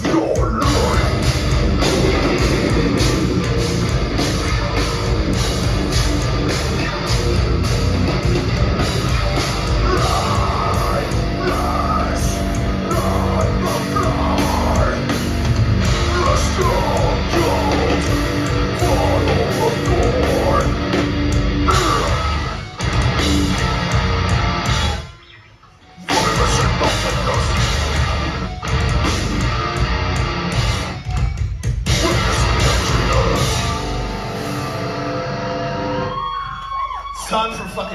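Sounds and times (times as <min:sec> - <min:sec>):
harsh screamed vocals: 0:00.0 - 0:04.8, 0:09.0 - 0:25.1, 0:26.0 - 0:29.6, 0:31.9 - 0:33.9, 0:35.3 - 0:37.9
bass and drums: 0:00.0 - 0:25.1, 0:26.1 - 0:36.3
distorted guitars: 0:00.0 - 0:37.9.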